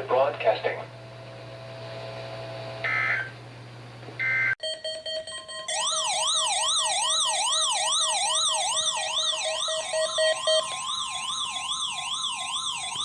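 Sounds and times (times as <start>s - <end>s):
warbling siren alert tone: 4.2s - 13.0s.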